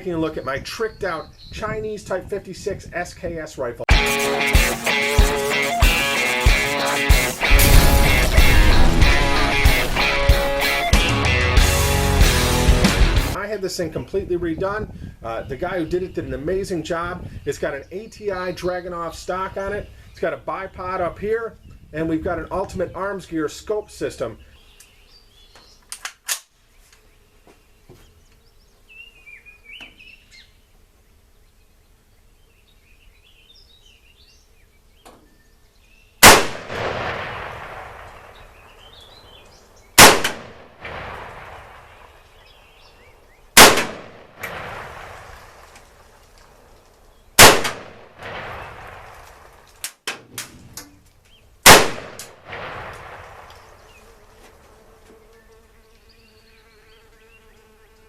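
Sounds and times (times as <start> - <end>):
rifle shots echoing: 7.4 - 10.9, 36.2 - 39.0, 40.0 - 42.4, 43.6 - 46.1, 47.4 - 49.7, 51.6 - 54.0.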